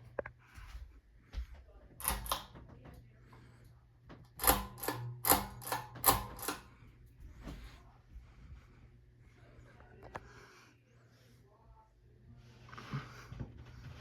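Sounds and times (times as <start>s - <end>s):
steady low hum: 0.0s - 14.0s
fan switch clicking: 2.0s - 2.7s, 4.3s - 6.7s.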